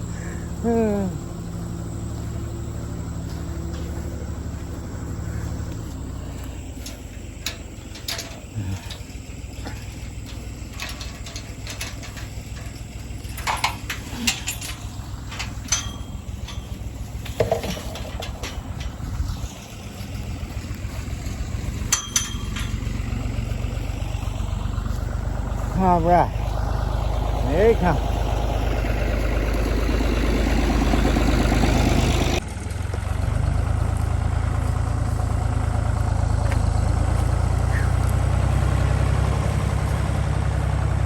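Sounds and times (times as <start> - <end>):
tractor engine running: 0.0 - 41.0
clicks and knocks: 6.4 - 19.0.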